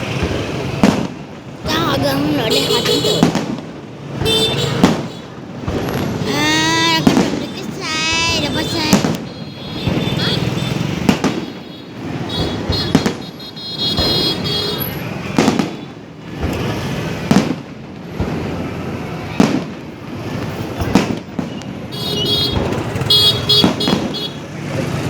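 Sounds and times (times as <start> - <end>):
firework shells bursting: 2.7 - 10.2, 19.4 - 24.4.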